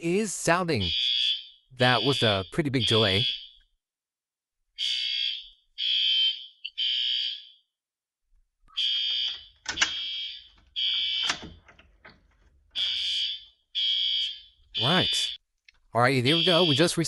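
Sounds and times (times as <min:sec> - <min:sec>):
fire alarm horn blasts: 0:00.8 - 0:03.6, 0:04.8 - 0:07.6, 0:08.8 - 0:11.4, 0:12.8 - 0:15.4, 0:16.2 - 0:17.0
sharp knocks and clicks: 0:09.2 - 0:10.0, 0:10.6 - 0:12.8.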